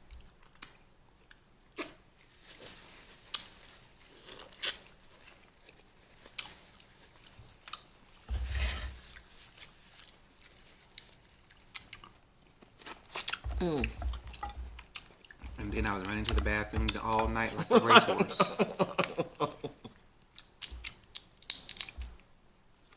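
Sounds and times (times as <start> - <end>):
chewing with crunches and clicks: 0.0 - 8.4, 9.0 - 17.6, 19.8 - 22.9
crackling burst with low thump: 13.5 - 17.8.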